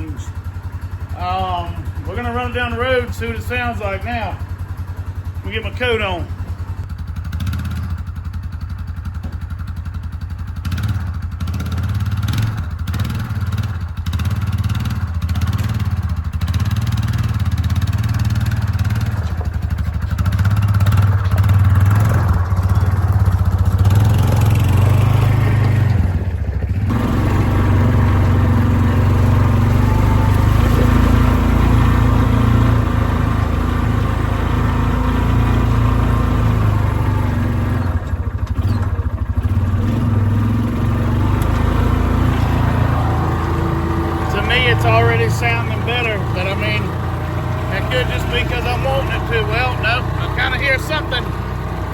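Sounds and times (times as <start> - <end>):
single-cylinder engine running: 0.0 - 51.9.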